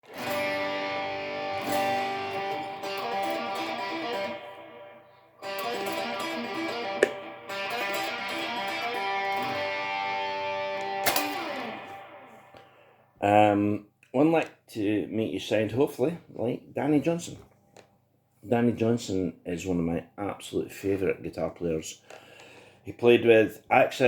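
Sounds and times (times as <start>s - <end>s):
electric guitar lead lick: 0.0s - 13.0s
sharp click: 10.8s - 11.7s.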